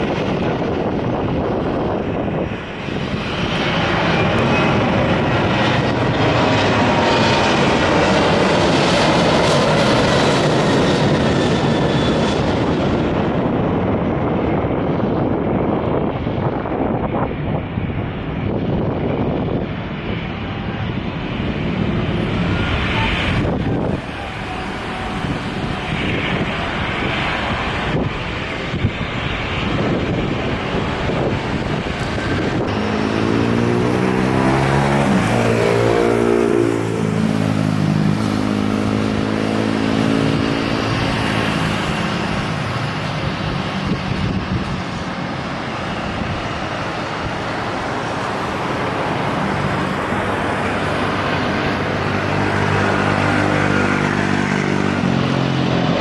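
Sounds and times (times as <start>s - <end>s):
wind buffeting microphone: 0.0s - 56.0s
engine hum passing: 19.1s - 56.0s.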